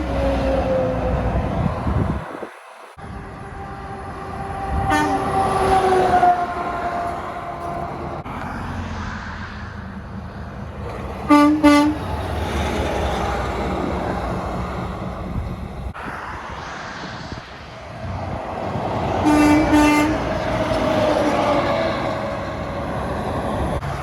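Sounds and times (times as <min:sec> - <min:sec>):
train horn: 0:00.0 - 0:01.0, 0:03.1 - 0:08.1, 0:11.3 - 0:12.2, 0:19.2 - 0:22.9
passing train rumble: 0:00.0 - 0:24.0.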